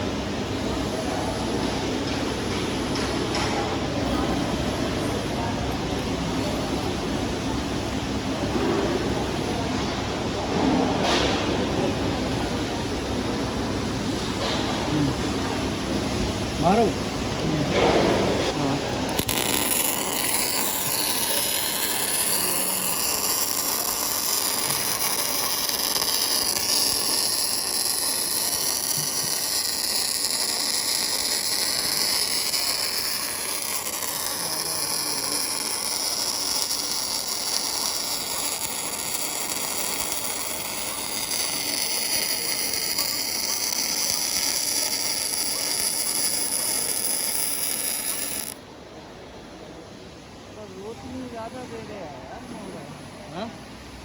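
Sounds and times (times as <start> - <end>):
welding arc crackling and sizzling: 17.7 - 48.6.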